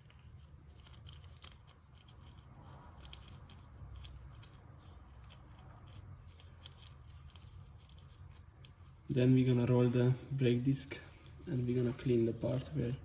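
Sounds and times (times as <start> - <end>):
small clicks and scrapes: 0.0 - 9.1
low steady hum: 0.0 - 13.0.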